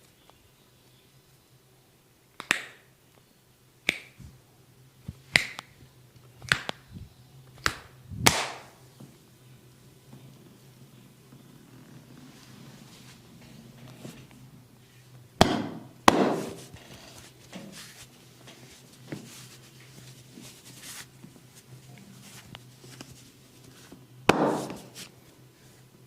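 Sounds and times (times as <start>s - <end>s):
hands rubbing skin: 16.3s - 25.2s.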